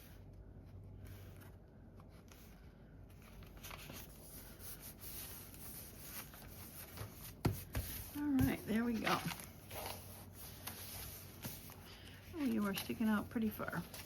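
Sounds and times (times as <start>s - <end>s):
paper rustling: 1.0s - 14.0s.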